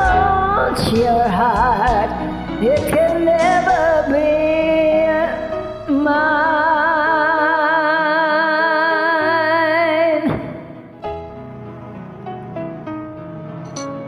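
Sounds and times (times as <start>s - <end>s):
karaoke backing track: 0.0s - 10.8s.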